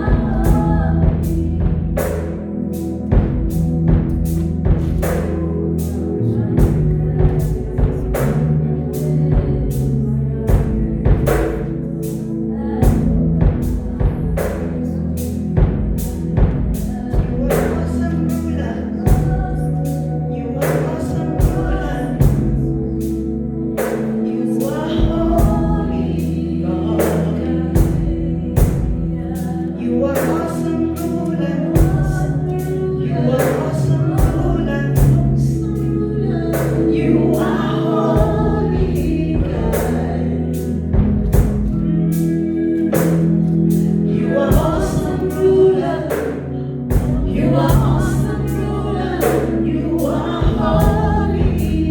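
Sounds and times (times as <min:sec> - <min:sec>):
steady drum beat: 0:00.0 - 0:20.0, 0:20.6 - 0:23.2, 0:23.8 - 0:26.2, 0:27.0 - 0:29.5, 0:31.7 - 0:32.7, 0:33.4 - 0:35.8, 0:36.6 - 0:51.9
choir singing: 0:00.0 - 0:51.9
sustained bass line: 0:00.0 - 0:51.9.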